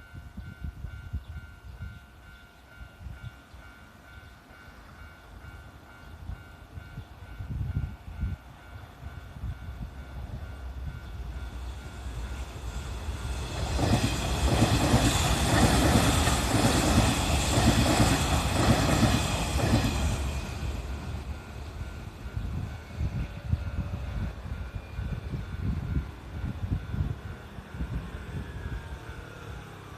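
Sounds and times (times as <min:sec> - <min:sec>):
electric train passing: 0:00.0 - 0:29.9
train wheel clatter: 0:11.5 - 0:21.5.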